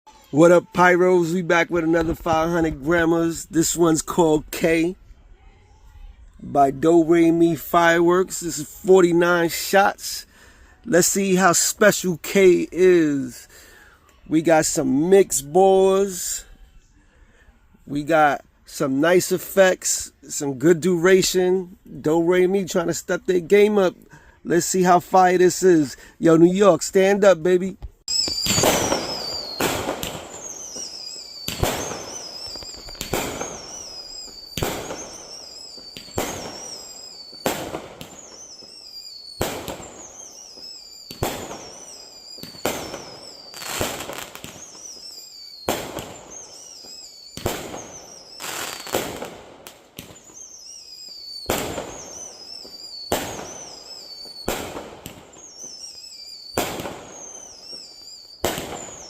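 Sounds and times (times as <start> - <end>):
high wavering falling whistle: 28.1 - 49.0, 50.1 - 54.6, 55.4 - 59.0
fireworks shots firing: 28.1 - 59.0.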